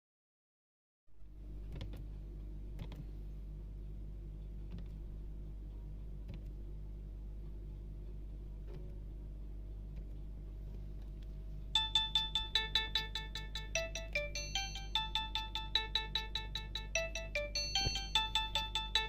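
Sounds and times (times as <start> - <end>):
low steady hum: 1.1 - 19.0
electronic ringtone melody: 11.8 - 19.0.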